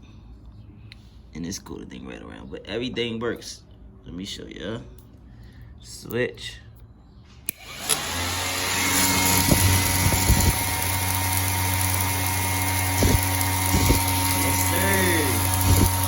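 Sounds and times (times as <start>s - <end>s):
cooling fans whirring: 7.4s - 16.0s.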